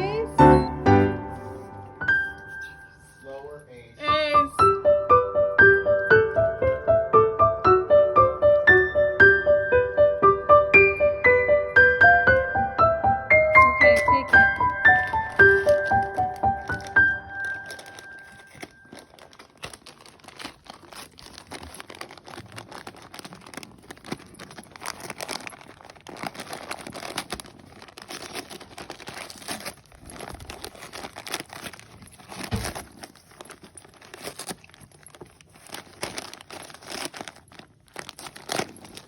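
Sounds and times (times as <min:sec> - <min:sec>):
dog tearing wrapping paper: 0:13.8 - 0:39.0.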